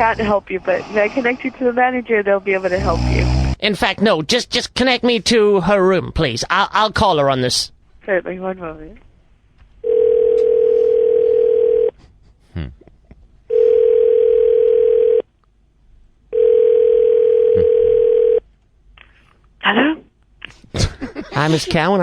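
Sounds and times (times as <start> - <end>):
telephone ringback tone: 9.8 - 11.9, 13.5 - 15.2, 16.3 - 18.4.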